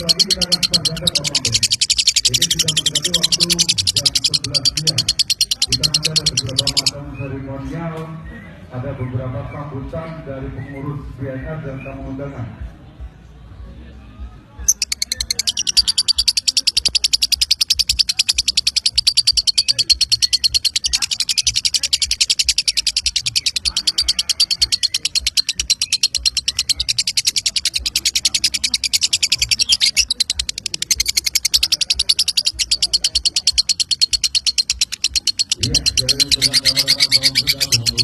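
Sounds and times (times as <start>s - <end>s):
lovebird rapid high chirps: 0.0s - 7.0s, 14.6s - 38.0s.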